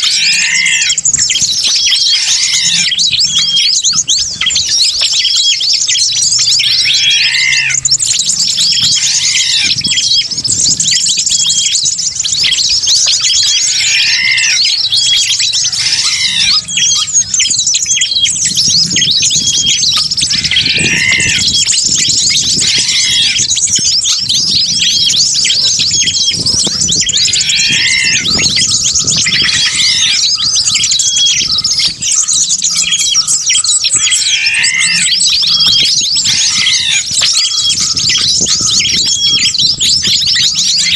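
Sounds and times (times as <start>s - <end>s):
birds chirping chatter: 0.0s - 40.9s
loud falling bird calls: 0.0s - 40.9s.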